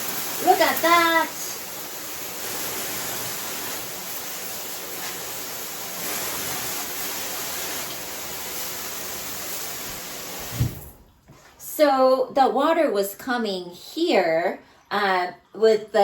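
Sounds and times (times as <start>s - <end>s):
shower spraying water onto bathtub: 0.0s - 11.1s.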